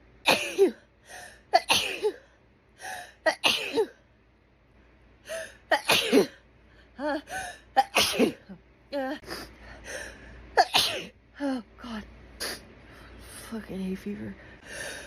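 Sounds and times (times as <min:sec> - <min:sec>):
quick in-breath: 0:14.5 - 0:15.0.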